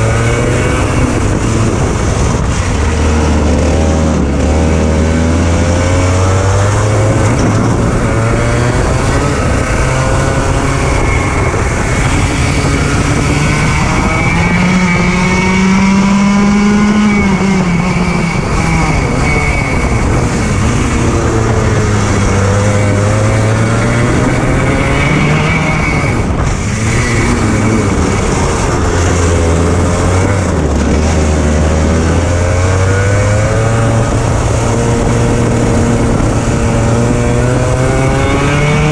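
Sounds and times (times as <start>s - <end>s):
kart engine revving: 0.0s - 38.9s.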